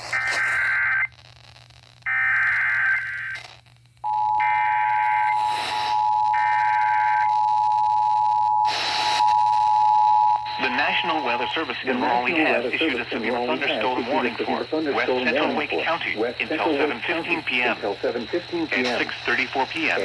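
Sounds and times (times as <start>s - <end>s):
screechy data bursts: 0.0s - 1.2s, 4.5s - 7.8s, 8.6s - 9.7s, 10.4s - 20.0s.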